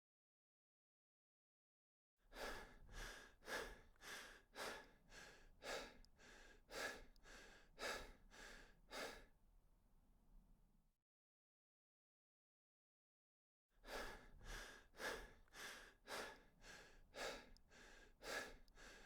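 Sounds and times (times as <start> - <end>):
person breathing hard and fast: 2.3 - 9.3, 13.8 - 19.0.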